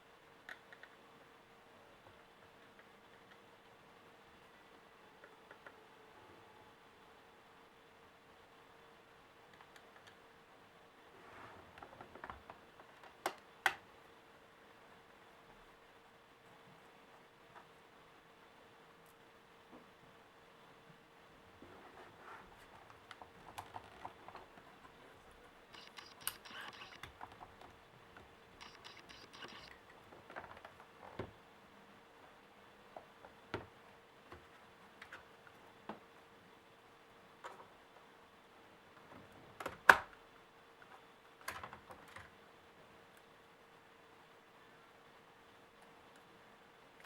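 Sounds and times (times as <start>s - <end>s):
laptop parts clicking and tapping: 0.5s - 1.0s, 25.7s - 31.4s.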